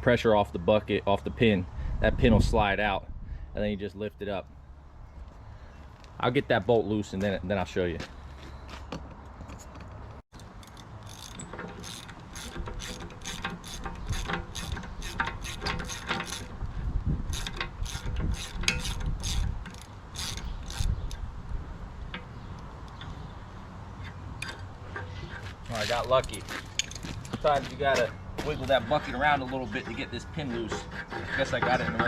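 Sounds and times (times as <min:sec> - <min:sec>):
ratchet wrench clicking: 0:10.6 - 0:16.6, 0:17.3 - 0:21.2.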